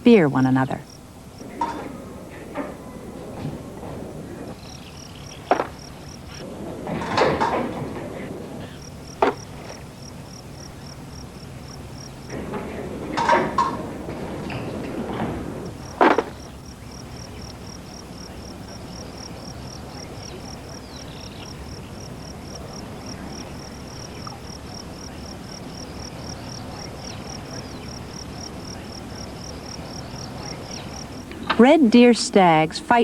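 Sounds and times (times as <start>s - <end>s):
insect chirping: 0.0s - 2.8s, 3.6s - 6.4s, 8.2s - 12.4s, 15.5s - 31.4s.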